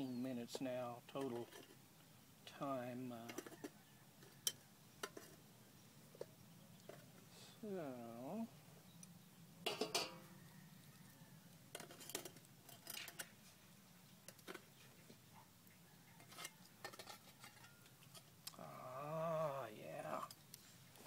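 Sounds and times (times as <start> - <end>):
cookware clinking: 9.7 - 10.2.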